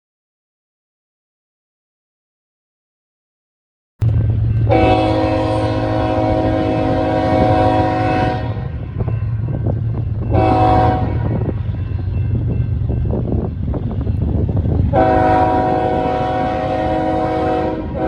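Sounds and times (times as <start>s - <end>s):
locomotive air horn: 4.7s - 8.8s, 10.3s - 11.5s, 14.9s - 18.0s.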